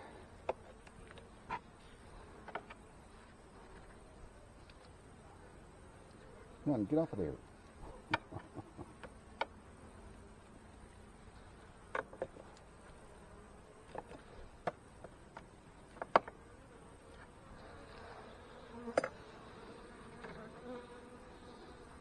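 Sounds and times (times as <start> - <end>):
honey bees buzzing: 0.0 - 22.0
hive frames clicking and knocking: 8.0 - 9.6, 11.8 - 12.6, 13.8 - 16.4.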